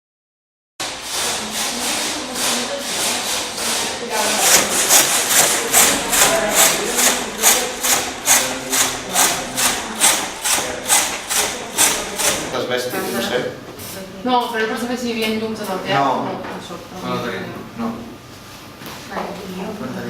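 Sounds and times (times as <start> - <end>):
rhythmic rubbing strokes: 0.8 - 13.3.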